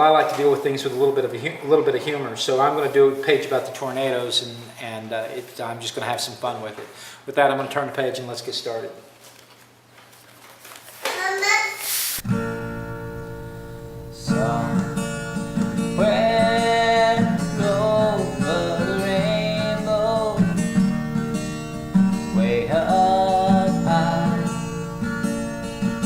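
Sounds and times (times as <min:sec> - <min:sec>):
strummed string instrument: 0:12.2 - 0:26.0
wordless singing: 0:14.1 - 0:25.3.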